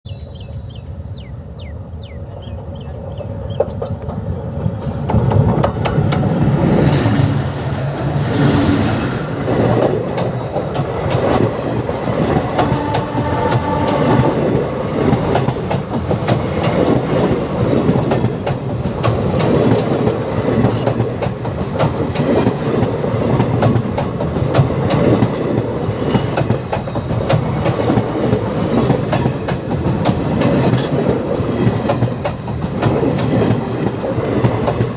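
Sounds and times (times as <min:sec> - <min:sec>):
train wheels clattering on rails: 0:03.5 - 0:34.9.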